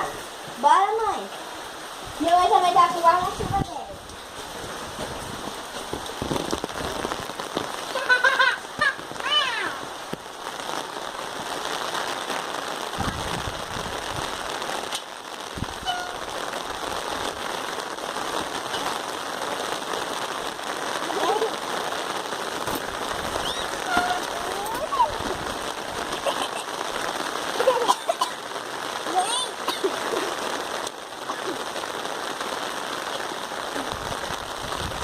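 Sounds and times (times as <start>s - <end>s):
rain pattering on umbrellas: 0.0s - 35.0s
short high-pitched calls: 15.8s - 16.3s, 23.4s - 24.3s.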